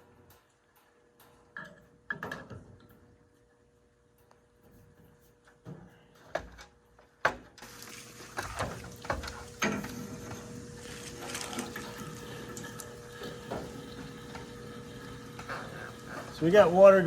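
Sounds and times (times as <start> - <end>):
water rushing into tank: 7.6 - 17.0.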